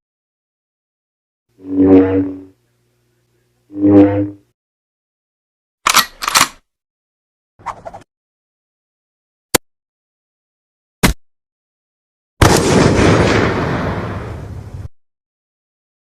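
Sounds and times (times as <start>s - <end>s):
sharp clicks: 5.8s - 6.6s.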